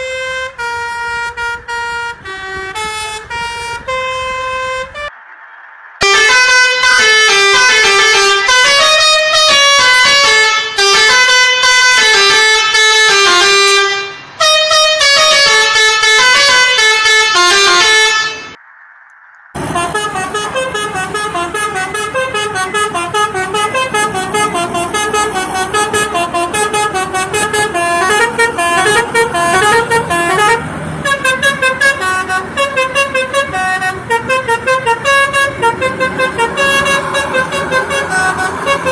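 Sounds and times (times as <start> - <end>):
musical air horn melodies: 0.0 - 5.1, 6.0 - 18.6, 19.6 - 38.9.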